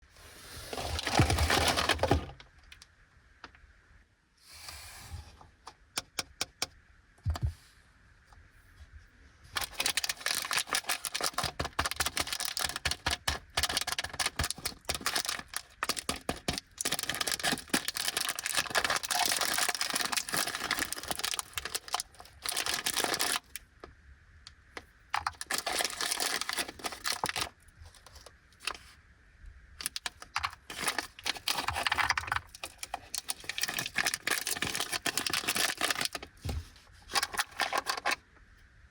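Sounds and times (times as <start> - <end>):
plastic bag crinkling: 0.7 - 2.4, 9.6 - 23.6, 25.1 - 28.8, 29.8 - 38.2.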